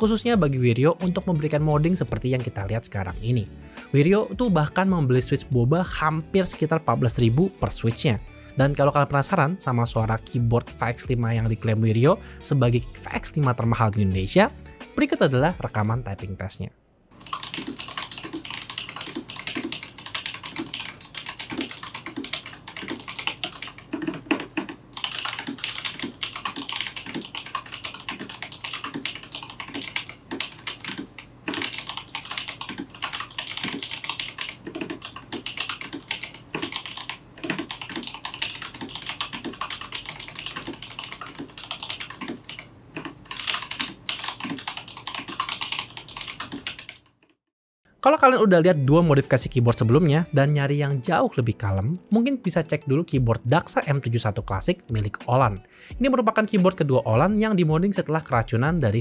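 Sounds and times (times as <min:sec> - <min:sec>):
mechanical keyboard typing: 0:17.2 - 0:47.2.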